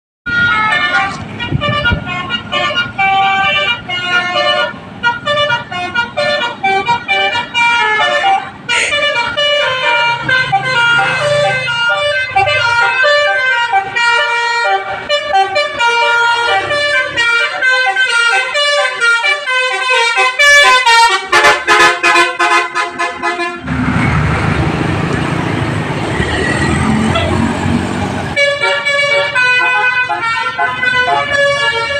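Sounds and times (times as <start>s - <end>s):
multi-tone bus horn melody: 0.3s - 24.0s, 25.3s - 31.9s
loud rushing noise: 23.6s - 28.4s.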